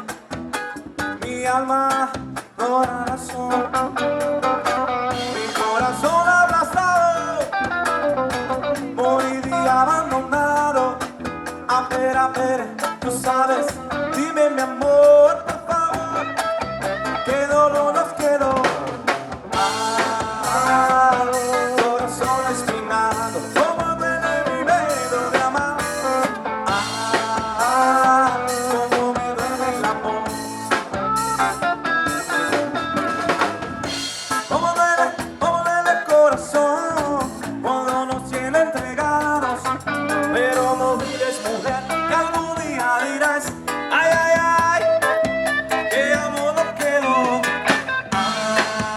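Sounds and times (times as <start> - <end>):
drum kit beat: 0.0 - 48.9
instrumental melody: 19.5 - 35.8, 43.7 - 48.9.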